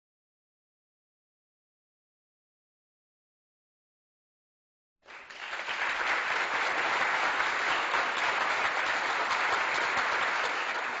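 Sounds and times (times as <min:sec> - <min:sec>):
crowd applause: 0:05.0 - 0:11.0.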